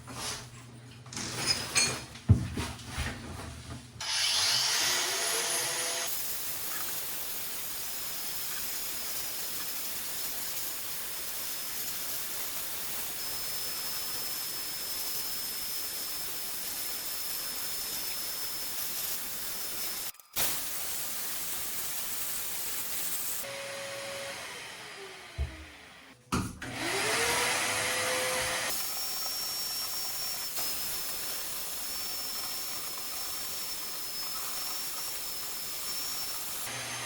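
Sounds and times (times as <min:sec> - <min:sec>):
steady even hiss: 0:06.1 - 0:23.5.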